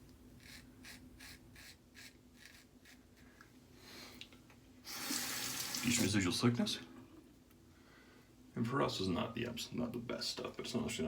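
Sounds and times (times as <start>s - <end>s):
scratchy strokes on skin: 0.4s - 3.2s.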